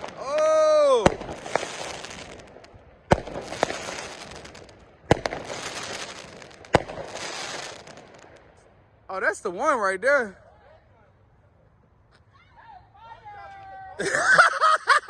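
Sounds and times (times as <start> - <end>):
fireworks bangs: 0.0 - 8.8
fireworks crackling hiss: 0.0 - 9.6.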